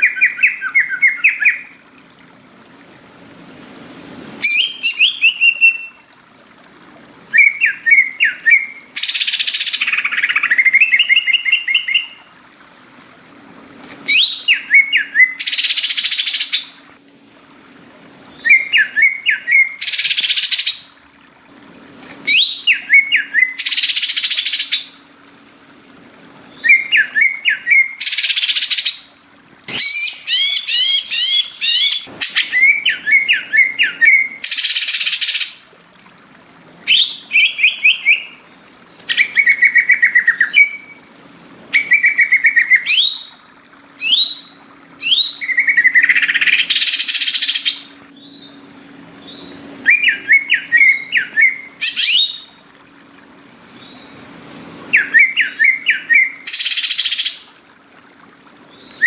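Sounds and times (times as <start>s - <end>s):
bird singing trilled phrases: 0.0s - 1.8s, 4.4s - 6.1s, 7.3s - 12.3s, 14.1s - 16.8s, 18.3s - 20.9s, 22.2s - 25.0s, 26.5s - 35.6s, 36.9s - 41.1s, 41.7s - 52.6s, 54.9s - 57.6s, 58.7s - 59.0s.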